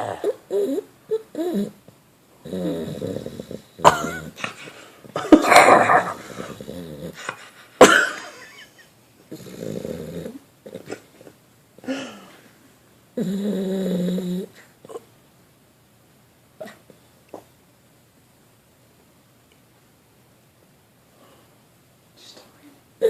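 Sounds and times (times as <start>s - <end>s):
dog snoring: 0.0s - 1.8s, 2.4s - 4.5s, 5.9s - 7.3s, 9.3s - 11.0s, 13.2s - 15.0s.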